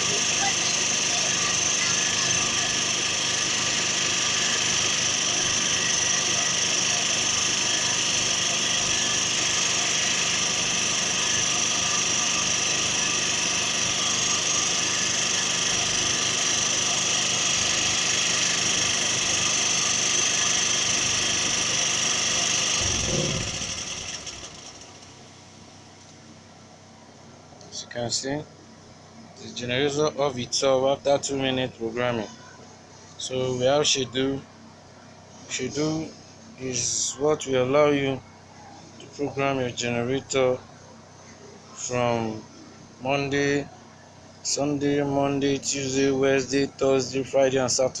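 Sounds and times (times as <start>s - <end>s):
generator engine running: 0.0s - 25.3s.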